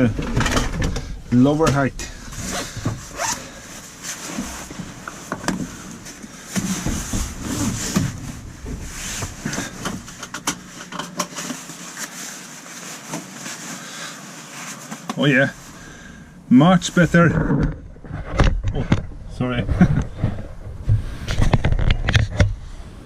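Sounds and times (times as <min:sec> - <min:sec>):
rustling on a car seat: 0:00.0 - 0:17.3, 0:19.7 - 0:23.0
seat belt being drawn: 0:02.4 - 0:13.6.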